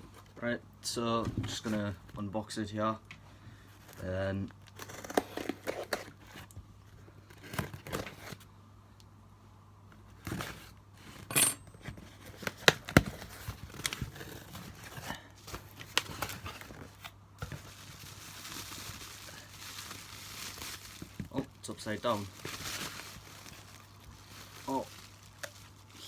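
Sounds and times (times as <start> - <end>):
packaging tearing and crinkling: 4.6 - 6.5, 7.3 - 8.4, 12.2 - 26.0
packaging rustling: 11.9 - 26.0.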